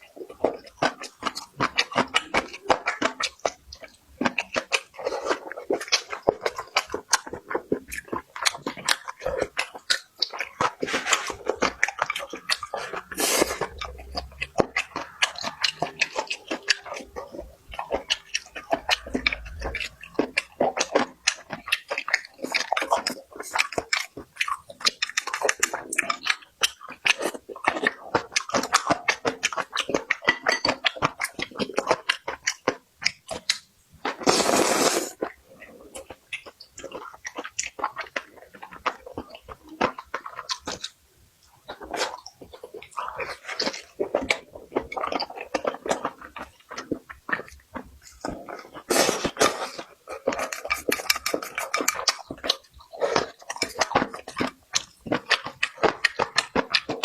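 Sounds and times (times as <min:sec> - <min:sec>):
person chewing food: 0:00.0 - 0:57.0.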